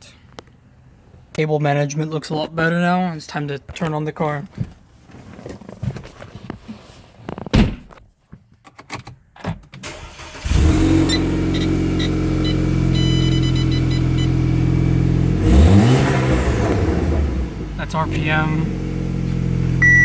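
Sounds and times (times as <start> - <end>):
car engine idling: 9.9 - 20.0
engine revving: 9.9 - 20.0
electronic chime tones: 11.1 - 14.4.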